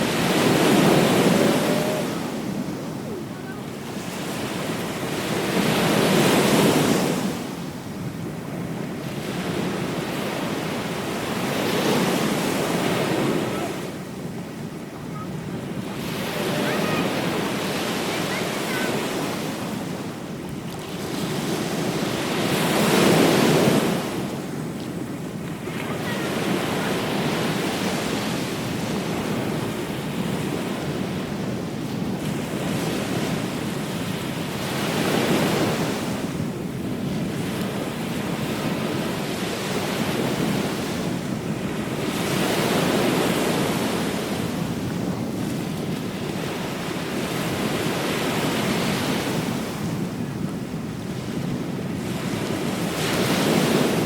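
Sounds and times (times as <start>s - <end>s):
ocean waves breaking: 0.0s - 54.0s.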